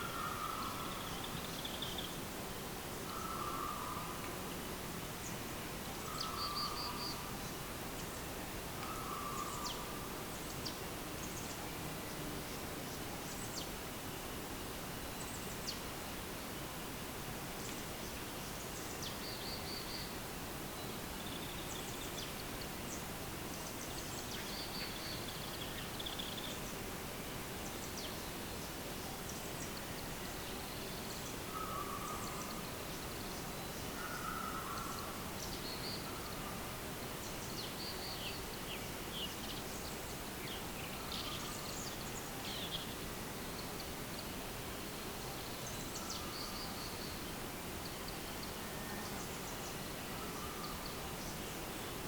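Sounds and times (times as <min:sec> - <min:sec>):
outdoor background hiss: 0:00.0 - 0:52.0.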